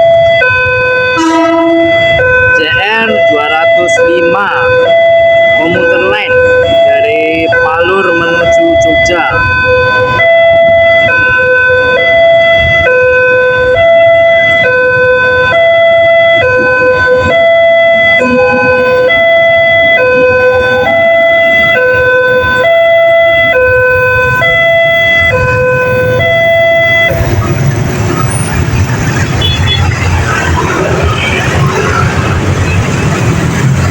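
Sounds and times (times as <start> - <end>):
road traffic noise: 0.0 - 33.9
two-tone crossing alarm: 0.0 - 33.9.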